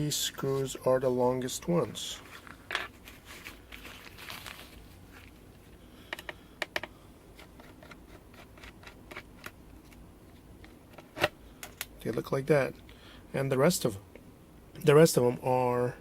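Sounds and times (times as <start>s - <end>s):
screwdriver clicks and taps: 6.1s - 6.9s.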